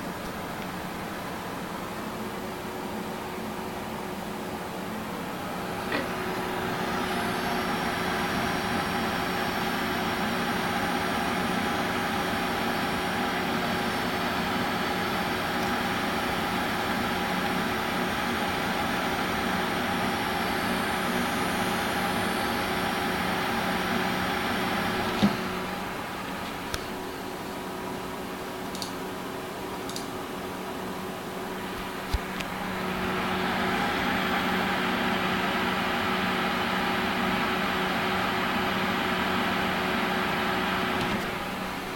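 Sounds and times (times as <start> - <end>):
graphics card coil whine buzz: 5.2 - 27.6
click: 15.6 - 15.8, 28.6 - 29.0, 29.9 - 30.1.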